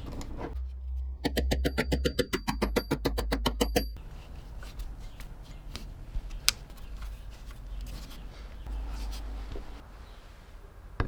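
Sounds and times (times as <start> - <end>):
low hum: 0.0 - 4.6.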